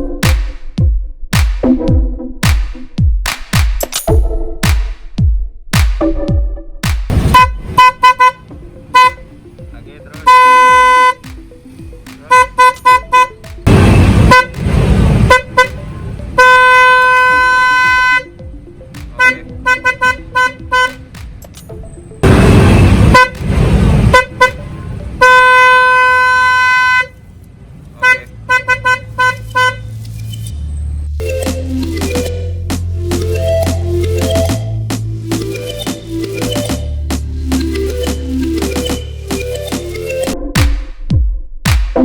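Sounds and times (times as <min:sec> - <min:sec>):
harsh horn blare: 0:07.1 - 0:09.4, 0:10.2 - 0:11.3, 0:12.3 - 0:18.4, 0:19.2 - 0:21.1, 0:22.2 - 0:27.3, 0:28.0 - 0:30.2
electric car horn tooting: 0:07.3 - 0:09.3, 0:10.3 - 0:11.2, 0:12.3 - 0:18.4, 0:19.2 - 0:21.0, 0:22.2 - 0:27.2, 0:28.0 - 0:29.9.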